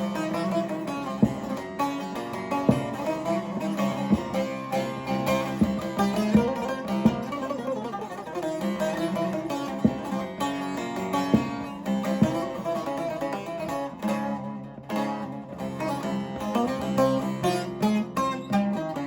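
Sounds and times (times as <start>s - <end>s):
sharp strokes across strings: 0.0s - 13.8s
long-necked lute plucked melody: 0.0s - 19.0s.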